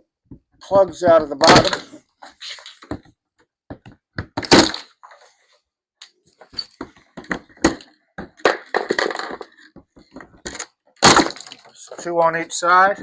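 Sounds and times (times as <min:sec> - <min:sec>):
plastic plugs knocking on cardboard: 0:02.9 - 0:04.5.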